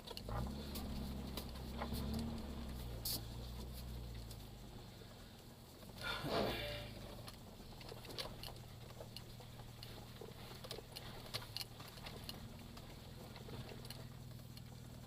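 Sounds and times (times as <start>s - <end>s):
engine idling: 0.0s - 15.0s
light clicks and ticks: 7.2s - 15.0s.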